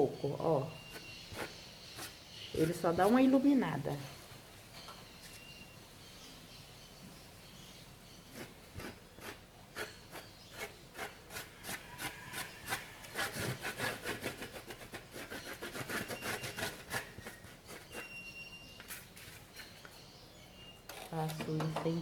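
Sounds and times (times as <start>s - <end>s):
scratchy paint brush strokes: 0.8s - 3.4s, 8.3s - 19.8s.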